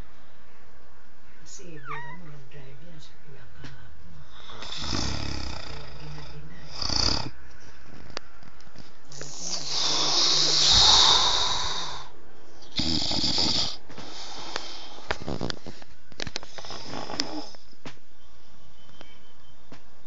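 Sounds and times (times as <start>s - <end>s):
snoring: 4.3s - 7.4s, 9.1s - 15.6s, 16.5s - 17.6s.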